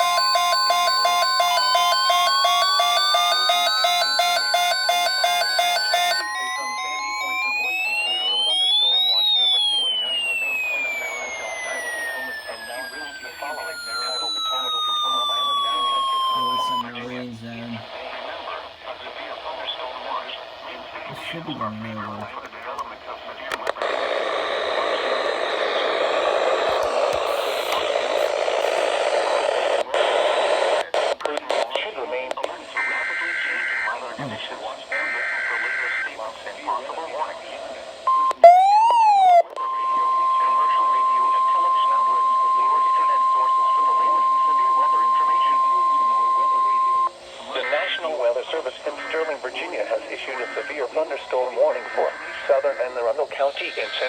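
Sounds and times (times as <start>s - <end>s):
rapid electronic beeps: 0.0s - 17.8s, 26.7s - 29.0s
steady electronic tone: 1.6s - 17.7s, 26.5s - 29.0s
radio static hiss: 1.6s - 54.0s.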